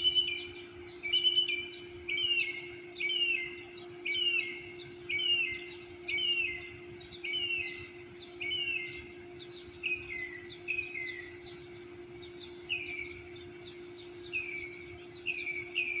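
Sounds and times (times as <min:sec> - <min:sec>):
bird whistling downslurred note: 0:00.0 - 0:11.6
faint high bird chirps: 0:00.0 - 0:16.0
steady low hum: 0:00.0 - 0:16.0.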